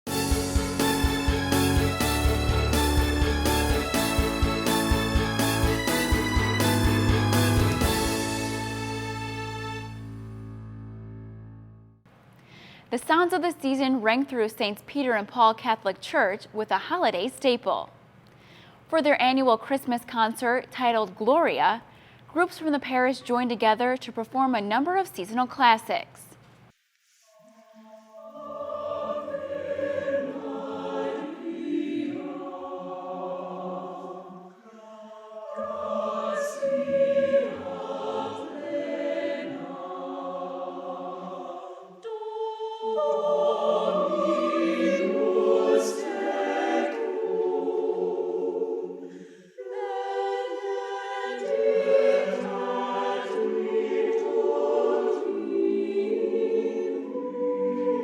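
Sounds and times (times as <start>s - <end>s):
church choir singing: 0.1s - 10.0s, 27.4s - 58.0s.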